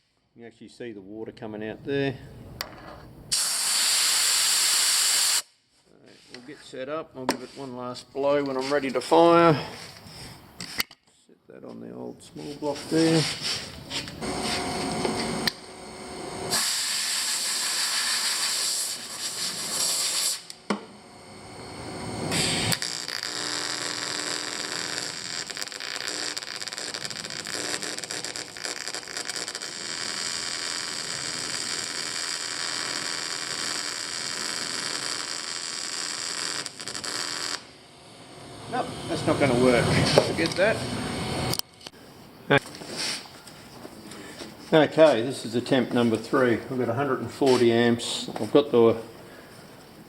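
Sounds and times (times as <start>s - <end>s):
welding arc hissing and buzzing: 3.3s - 5.5s, 12.9s - 42.0s
air hissing bursts: 3.3s - 5.6s, 12.8s - 15.5s, 16.3s - 20.6s, 22.1s - 22.9s, 42.8s - 43.3s.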